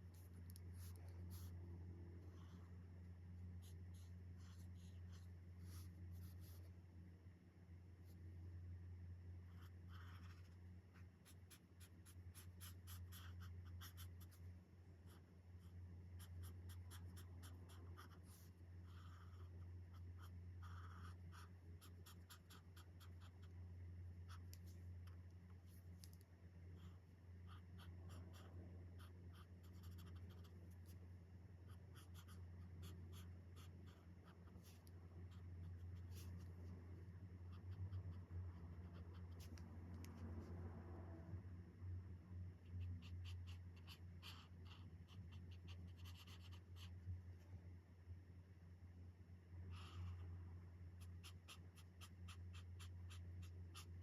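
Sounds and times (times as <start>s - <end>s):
marker scratching on paper: 9.5s - 14.4s, 15.1s - 23.5s, 26.8s - 31.0s, 31.7s - 36.7s, 42.6s - 47.0s, 50.9s - 54.0s
low hum: 32.6s - 43.6s.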